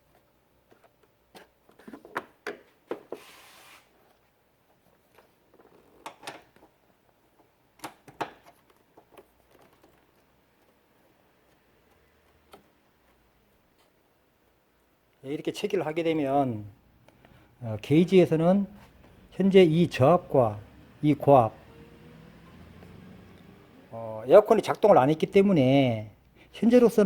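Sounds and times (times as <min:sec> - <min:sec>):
short air hiss: 0:03.2 - 0:03.9.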